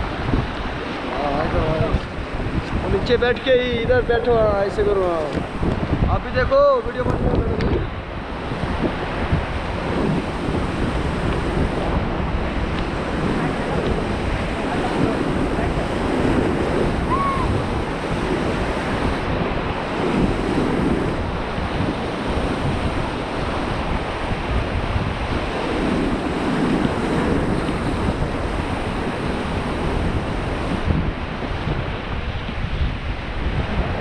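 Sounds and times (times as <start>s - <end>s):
wind buffeting microphone: 0.0s - 34.0s
rushing river water: 7.8s - 34.0s.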